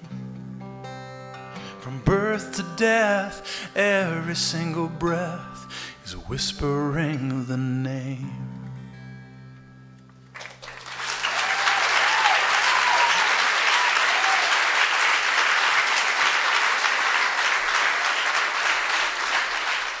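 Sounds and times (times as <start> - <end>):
guitar chord ringing: 7.2 - 10.4
audience applauding: 10.3 - 20.0.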